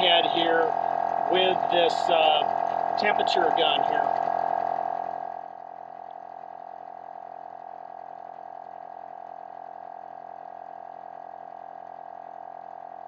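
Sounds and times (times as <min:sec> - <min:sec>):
air compressor droning: 0:00.0 - 0:06.0.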